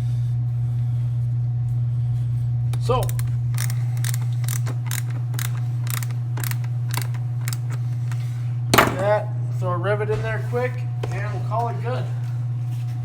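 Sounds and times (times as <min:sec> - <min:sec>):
low hum: 0:00.0 - 0:13.0
hand tools clicking: 0:02.7 - 0:08.2.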